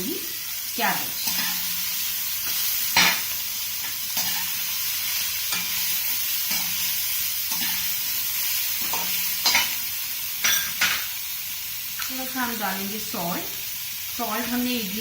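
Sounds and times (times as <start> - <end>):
vegetables sizzling in oil: 0.0 - 15.0
spatula scraping a pan: 1.2 - 8.1.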